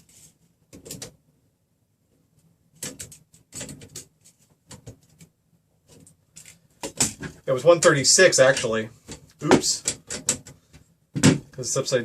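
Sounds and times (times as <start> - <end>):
small hard parts clicking and scraping: 5.9 - 7.4.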